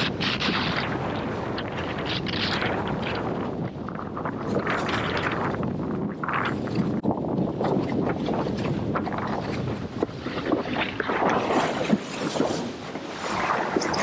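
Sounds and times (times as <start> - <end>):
rushing water: 0.0 - 14.0
wind buffeting microphone: 0.0 - 14.0
board slapping on water: 7.6 - 14.0.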